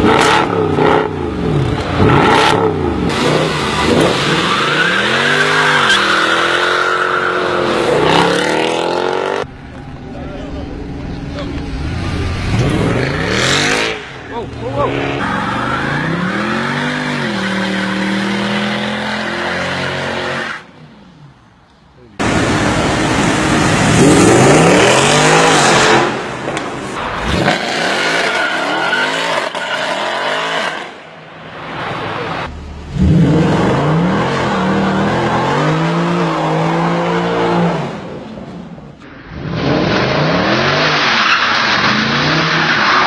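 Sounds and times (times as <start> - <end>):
car engine revving and accelerating: 0.0 - 9.5, 10.8 - 20.5, 22.2 - 26.4, 32.2 - 38.2.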